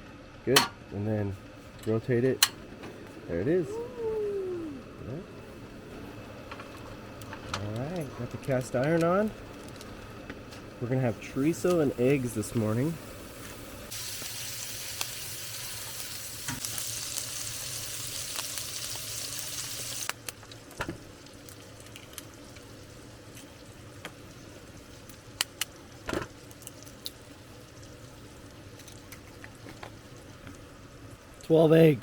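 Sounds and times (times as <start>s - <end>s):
sausage sizzling in a skillet: 6.9s - 31.4s.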